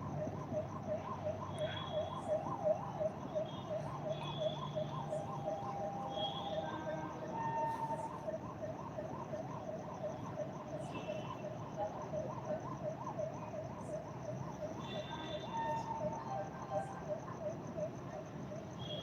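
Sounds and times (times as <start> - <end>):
siren yelping: 1.2 - 10.7, 14.7 - 18.0.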